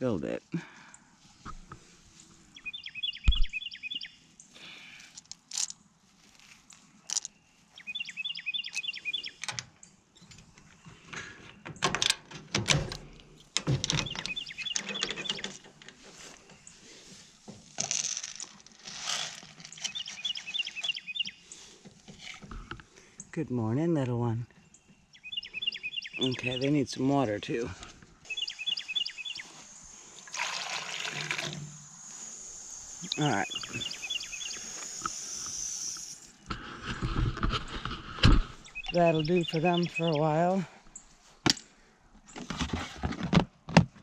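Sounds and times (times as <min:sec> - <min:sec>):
songbird singing high notes: 0:02.6 - 0:04.2, 0:07.8 - 0:09.4, 0:24.7 - 0:27.3, 0:28.3 - 0:29.6, 0:32.1 - 0:36.3, 0:38.6 - 0:40.6
rustling and handling clicks: 0:05.1 - 0:05.8, 0:06.4 - 0:07.4, 0:17.6 - 0:21.0.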